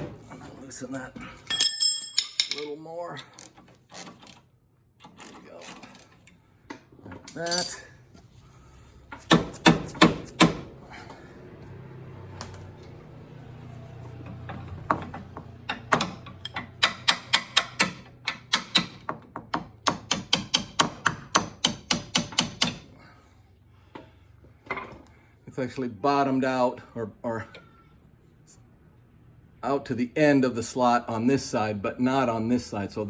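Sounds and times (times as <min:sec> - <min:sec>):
regular metallic taps: 0:01.4 - 0:02.8, 0:14.2 - 0:22.9
sharp metallic knocks: 0:09.2 - 0:10.7, 0:14.4 - 0:22.8.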